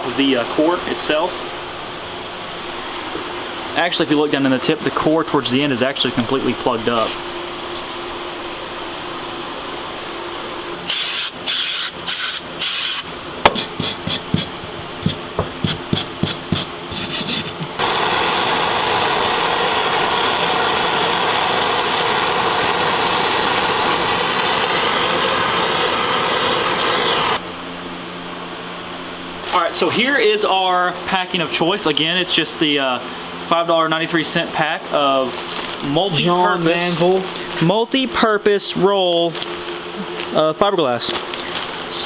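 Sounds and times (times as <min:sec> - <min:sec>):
steady rushing noise: 0:17.8 - 0:27.4.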